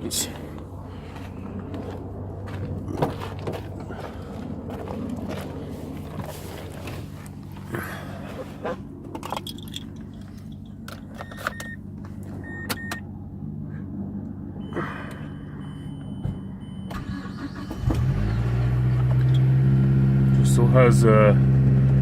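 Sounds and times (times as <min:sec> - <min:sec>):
steady low hum: 0:00.0 - 0:18.1
car engine starting and running: 0:00.0 - 0:22.0
keys jangling: 0:09.2 - 0:10.8
short electronic beeps: 0:12.4 - 0:13.0, 0:14.6 - 0:17.8.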